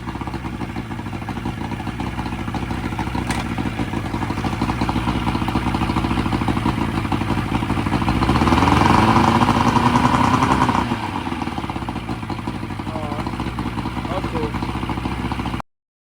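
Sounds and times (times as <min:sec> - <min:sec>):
outboard motor running: 0:00.0 - 0:15.6.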